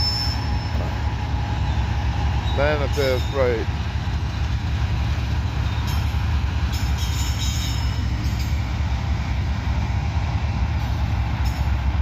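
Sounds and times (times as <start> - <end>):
high-pitched wheel squeals: 0.0 - 1.0
freight train rumbling past: 0.0 - 12.0.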